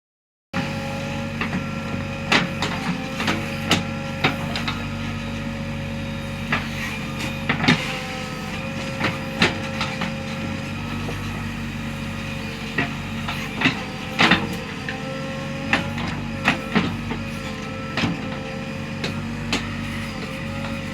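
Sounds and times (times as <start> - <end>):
diesel engine running: 0.6 - 20.9.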